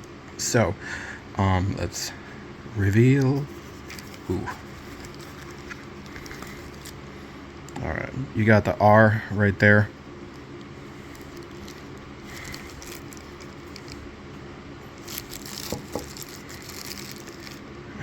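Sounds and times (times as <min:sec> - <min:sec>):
low background hum: 0:00.0 - 0:18.0
packaging rustling: 0:03.2 - 0:07.2, 0:10.3 - 0:14.1, 0:15.0 - 0:17.8.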